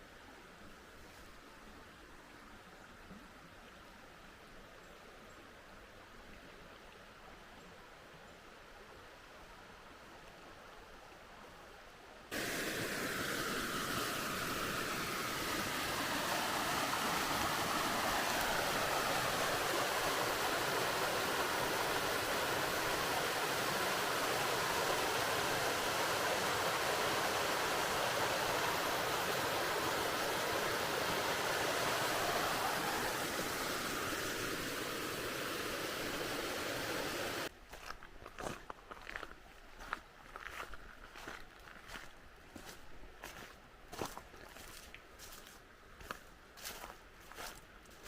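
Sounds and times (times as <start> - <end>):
waterfall rushing: 12.3 - 37.5.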